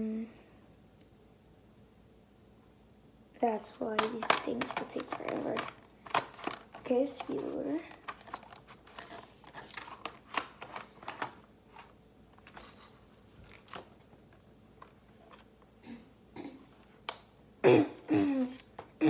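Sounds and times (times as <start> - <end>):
plastic clicks and taps: 4.0 - 7.3.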